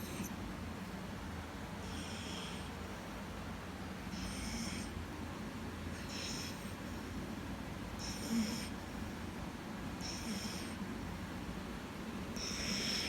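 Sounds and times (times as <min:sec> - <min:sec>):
snoring with whistling breath: 0:10.0 - 0:10.8, 0:12.4 - 0:13.0.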